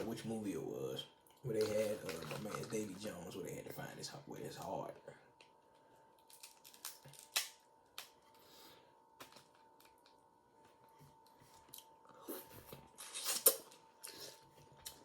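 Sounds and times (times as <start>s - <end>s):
crab shell cracking: 6.2s - 8.2s.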